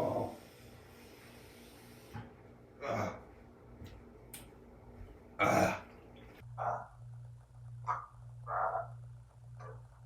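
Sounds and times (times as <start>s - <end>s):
steady low hum: 2.3s - 10.0s
person clearing throat: 2.8s - 3.2s, 5.4s - 5.9s.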